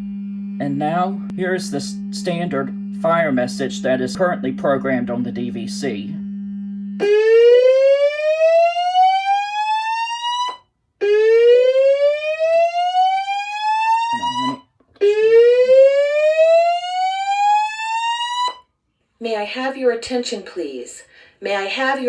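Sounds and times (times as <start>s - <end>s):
steady low hum: 0.0s - 7.1s.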